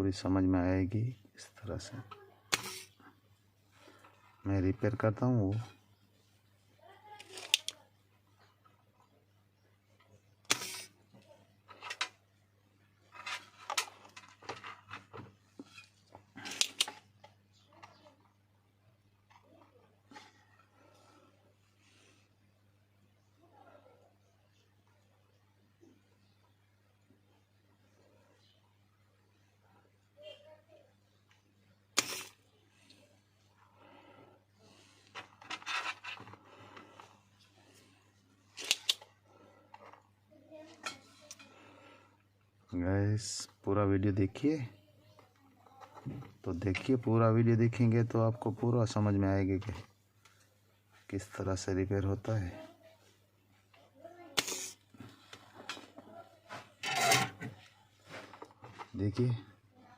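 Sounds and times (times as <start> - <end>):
small tool scraping and clicking: 2.5 - 2.9, 7.2 - 7.8, 10.5 - 11.0, 13.1 - 17.1, 32.0 - 32.4, 38.6 - 39.1
tools scraping on phone: 10.5 - 11.0, 35.0 - 37.2, 56.5 - 58.8.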